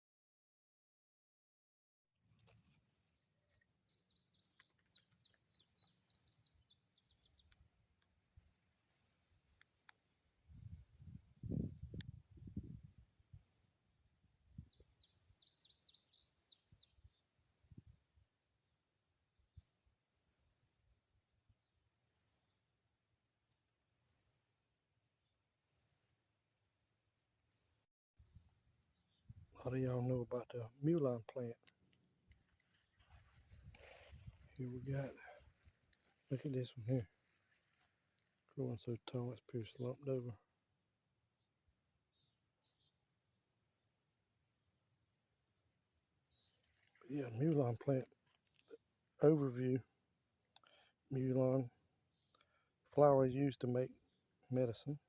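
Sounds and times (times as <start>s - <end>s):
birds chirping: 2.4s - 7.7s, 14.4s - 17.8s, 29.1s - 37.9s, 46.4s - 49.6s
faint insect trill: 14.4s - 17.9s, 18.6s - 55.0s.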